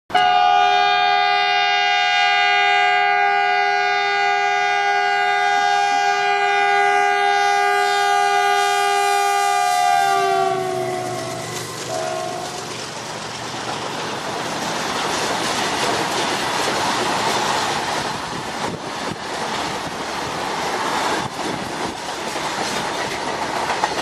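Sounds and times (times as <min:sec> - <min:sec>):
locomotive air horn blast: 0:00.1 - 0:12.7
rumble of running train: 0:00.1 - 0:24.0.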